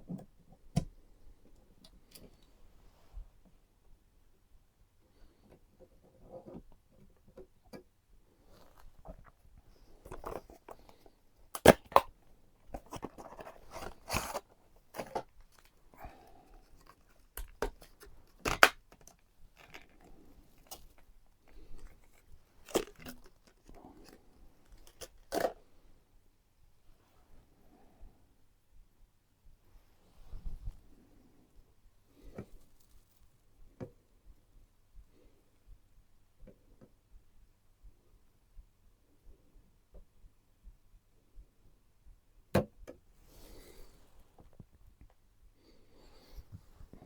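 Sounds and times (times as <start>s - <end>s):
packaging crinkling and tearing: 11.5s - 12.1s, 12.7s - 25.6s.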